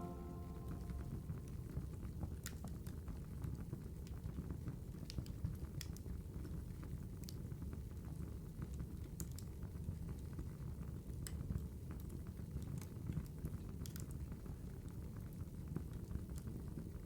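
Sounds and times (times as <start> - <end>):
low-pitched ambient noise: 0.0 - 1.3
sharp crackles and pops: 11.2 - 14.3.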